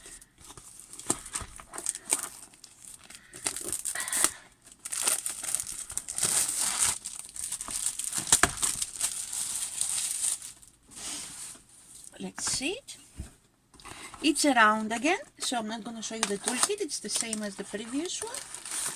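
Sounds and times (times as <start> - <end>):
packaging crinkling and rustling: 0.0 - 10.8, 16.0 - 18.9
packaging tearing: 0.8 - 10.6, 16.2 - 18.9.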